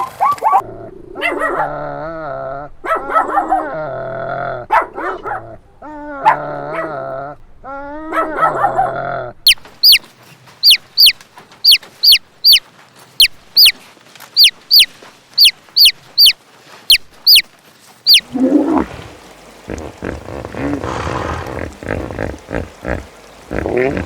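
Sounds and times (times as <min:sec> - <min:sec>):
chicks peeping: 0:09.8 - 0:10.0, 0:10.6 - 0:12.6, 0:14.4 - 0:17.5, 0:18.1 - 0:18.8
drawn-out animal call: 0:18.1 - 0:24.0.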